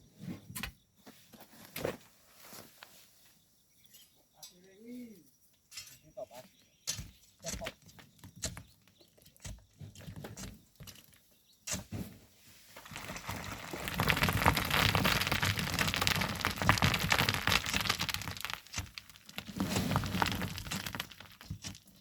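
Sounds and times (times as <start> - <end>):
gritty sand crunching and scraping: 7.0 - 22.0
stones knocking and clicking: 12.8 - 22.0.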